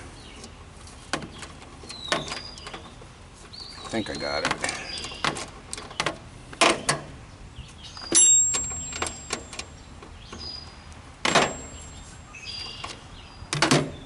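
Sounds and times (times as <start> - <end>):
hand tools and metal parts clinking: 7.9 - 9.7.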